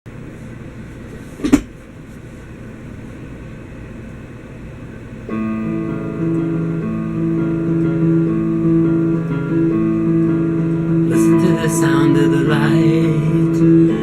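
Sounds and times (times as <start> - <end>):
guitar chord strummed: 5.3 - 14.0.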